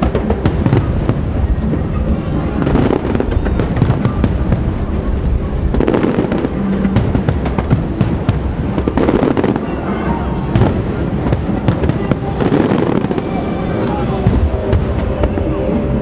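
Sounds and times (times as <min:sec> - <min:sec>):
fireworks bangs and crackles: 0:00.0 - 0:16.0
low rumble: 0:00.0 - 0:16.0
music playing: 0:00.0 - 0:16.0.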